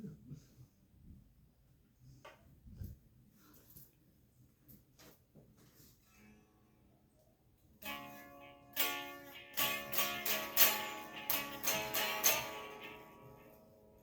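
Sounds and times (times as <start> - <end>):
guitar plucked single notes: 7.8 - 13.6.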